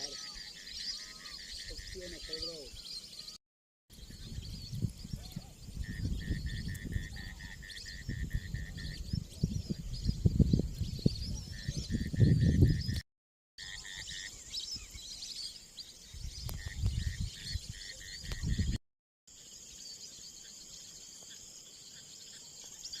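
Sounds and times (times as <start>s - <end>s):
bird chirps: 0.0s - 13.0s, 13.6s - 23.0s.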